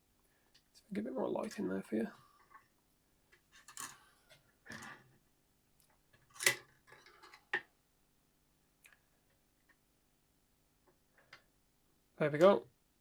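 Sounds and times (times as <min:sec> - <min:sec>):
small tools clicking and scraping: 0:03.4 - 0:05.0, 0:06.2 - 0:07.6.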